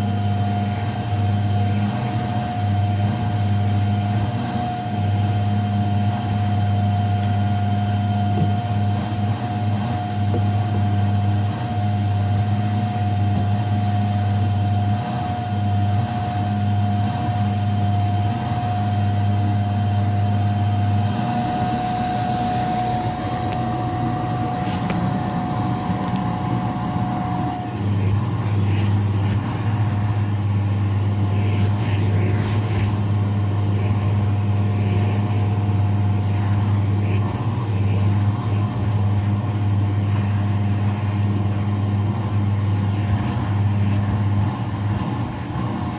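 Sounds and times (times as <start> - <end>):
thin high whine: 0.0 - 45.9
vacuum cleaner running on carpet: 0.0 - 45.9.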